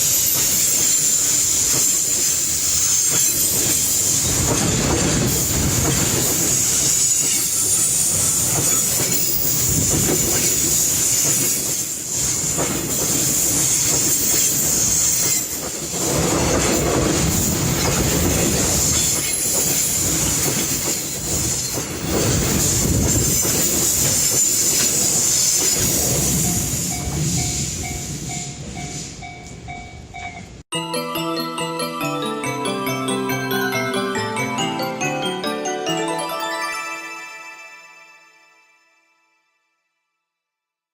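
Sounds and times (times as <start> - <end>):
wheels clattering over rail joints: 1.5 - 28.8.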